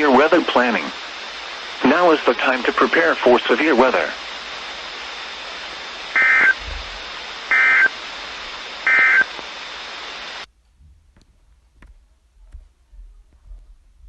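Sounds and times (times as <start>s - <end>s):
radio hiss: 0.0s - 10.5s
short data bursts: 6.0s - 6.6s, 7.5s - 8.0s, 8.7s - 10.4s.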